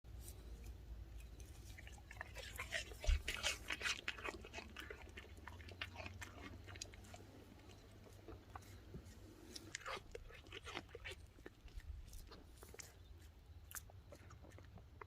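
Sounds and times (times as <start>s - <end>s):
dog crunching food: 1.2s - 15.0s.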